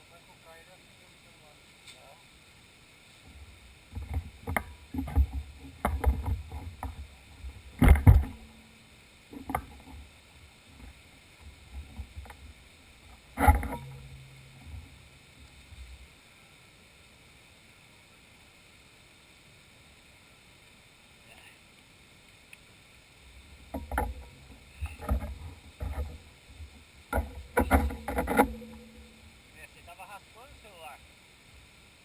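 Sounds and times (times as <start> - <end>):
faint steady hiss: 0.0 - 32.0
knocks thumps and rattles: 7.8 - 8.5, 27.1 - 29.2.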